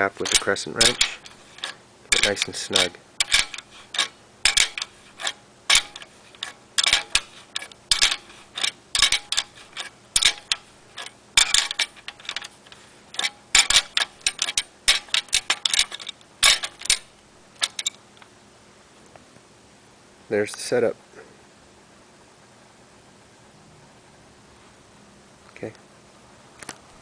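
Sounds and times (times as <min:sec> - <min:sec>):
wrench clicking and scraping on nut: 0:00.0 - 0:18.0.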